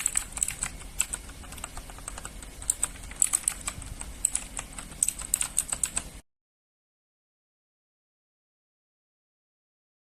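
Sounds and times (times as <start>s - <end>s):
mechanical keyboard typing: 0.0s - 6.2s.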